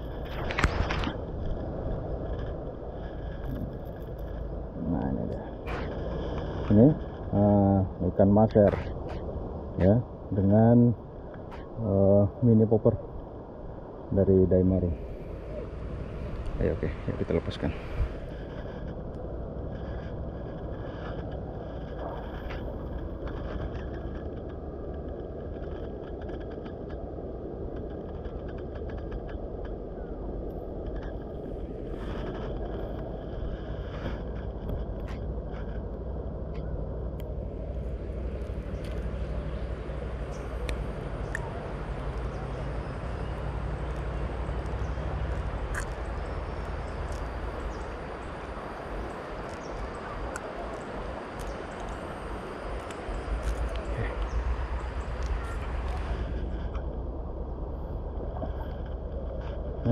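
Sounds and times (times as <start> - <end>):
low hum: 0.0 - 59.9
fast-flowing river rushing: 37.6 - 56.5.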